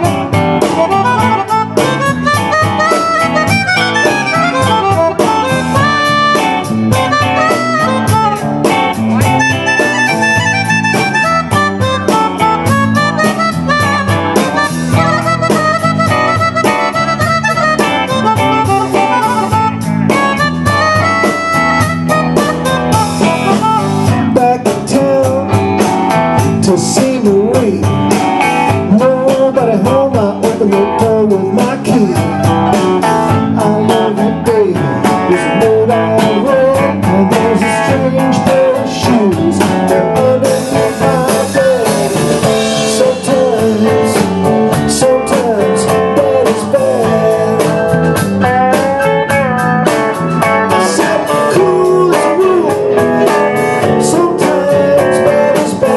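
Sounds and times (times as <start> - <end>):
live band playing blues: 0.0 - 55.9
steady drum beat: 0.0 - 55.9
lead instrument bending pitch: 0.1 - 24.3.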